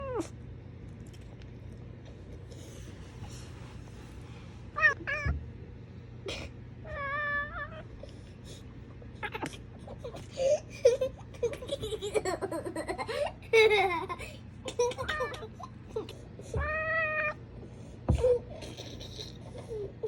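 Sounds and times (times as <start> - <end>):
cat chirping and trilling: 4.7 - 5.4, 6.8 - 8.0, 16.5 - 17.4.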